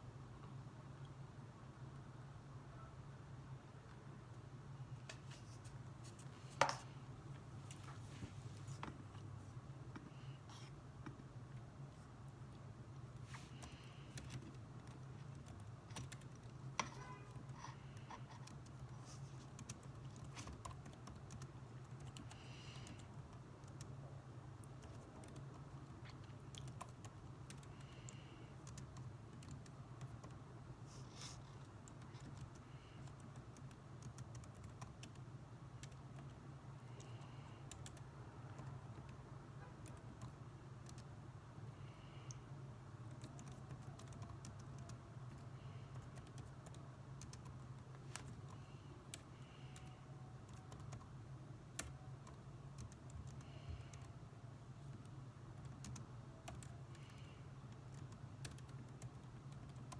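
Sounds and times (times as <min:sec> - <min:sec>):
typing on a keyboard: 0:13.5 - 0:24.0, 0:24.6 - 0:30.4, 0:31.6 - 0:39.2, 0:39.8 - 0:41.1, 0:43.0 - 0:54.2, 0:54.8 - 0:59.9.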